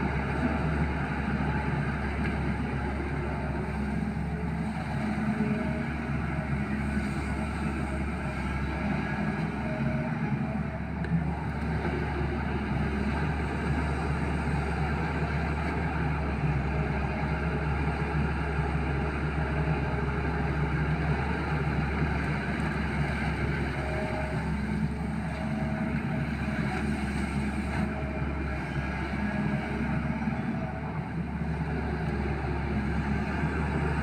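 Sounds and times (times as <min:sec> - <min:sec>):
excavator diesel engine running: 0:00.0 - 0:34.0.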